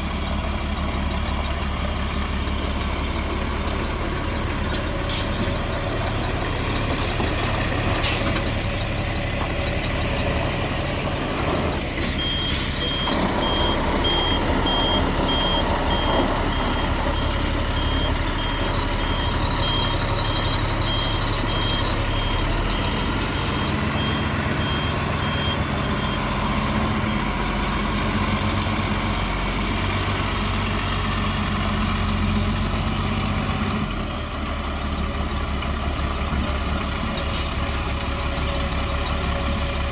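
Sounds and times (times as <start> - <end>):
reversing alarm beeping: 0.0 - 3.2, 12.0 - 27.8
diesel truck engine running: 0.0 - 39.9.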